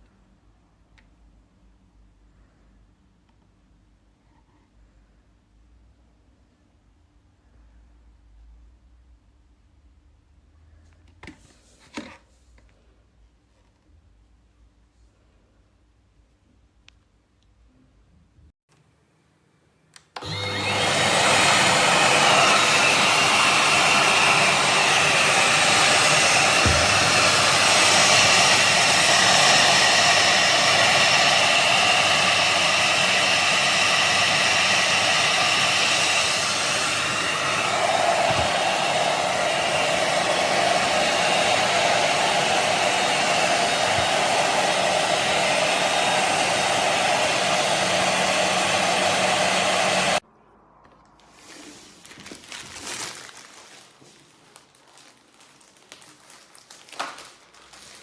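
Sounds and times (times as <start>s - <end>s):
handheld vacuum cleaner whine: 20.2s - 50.2s.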